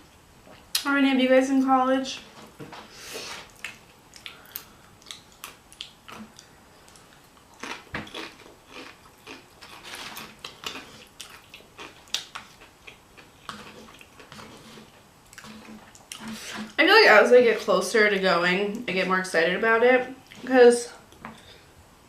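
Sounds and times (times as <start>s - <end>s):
person chewing food: 3.3s - 16.8s
wet mouth clicks and smacks: 3.5s - 7.0s.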